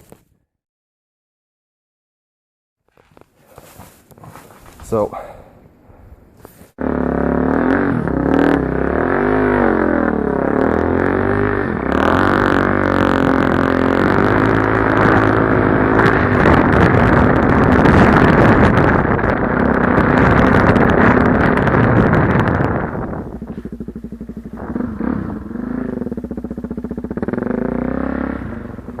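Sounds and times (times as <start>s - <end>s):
dirt bike engine revving: 6.8s - 29.0s.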